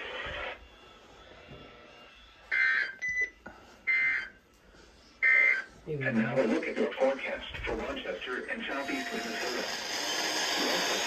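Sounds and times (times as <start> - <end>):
weather radio beeps: 2.6 - 4.3, 5.2 - 5.7, 8.6 - 9.7
radio static: 5.3 - 10.0.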